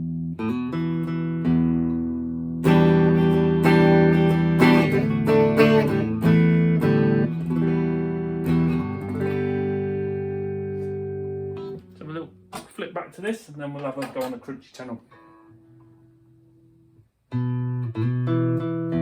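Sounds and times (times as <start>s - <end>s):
electric guitar chords strummed: 0.0s - 12.7s, 17.3s - 19.0s.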